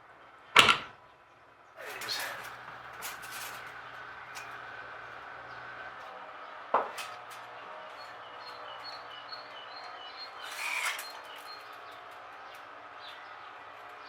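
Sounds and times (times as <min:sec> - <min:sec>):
outdoor background noise: 0:00.0 - 0:14.0
small bird chirping: 0:07.9 - 0:14.0.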